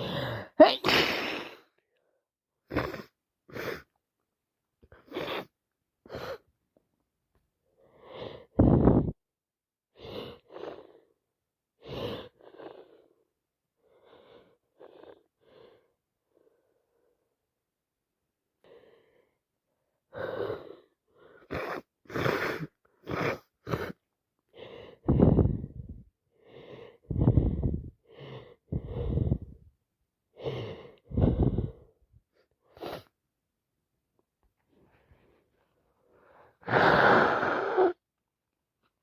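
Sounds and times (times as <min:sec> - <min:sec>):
woman sniffing: 0:00.0 - 0:01.7, 0:02.7 - 0:03.9, 0:05.0 - 0:05.5, 0:20.2 - 0:24.0, 0:32.6 - 0:33.2, 0:36.2 - 0:38.0
gasping in-breath: 0:00.0 - 0:04.0, 0:20.1 - 0:29.7, 0:30.4 - 0:32.0, 0:34.7 - 0:38.0
woman sneezing explosively: 0:00.6 - 0:01.6.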